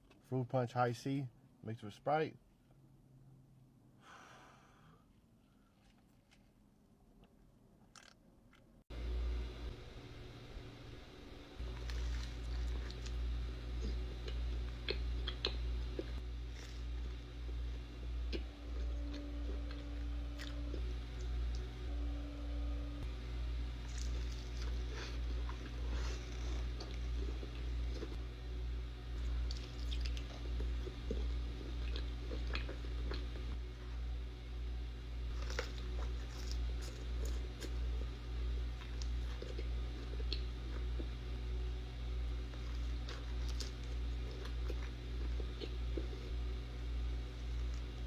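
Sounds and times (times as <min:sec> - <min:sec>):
low background hum: 0:00.0 - 0:48.0
person chewing food: 0:05.6 - 0:06.6, 0:07.2 - 0:08.6, 0:11.6 - 0:21.7, 0:23.8 - 0:28.2, 0:29.2 - 0:33.6, 0:35.3 - 0:41.2, 0:42.3 - 0:46.4
crisp crunches: 0:11.6 - 0:13.2, 0:23.8 - 0:28.1, 0:35.3 - 0:38.1, 0:42.5 - 0:46.3.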